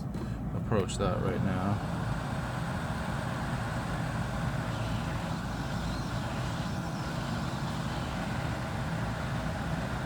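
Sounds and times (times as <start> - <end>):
hot air blower hissing: 1.0 - 10.0.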